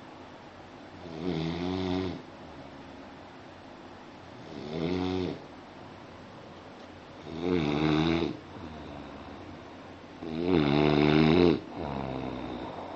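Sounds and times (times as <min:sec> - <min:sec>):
person snoring: 0:07.2 - 0:09.4, 0:10.2 - 0:12.9.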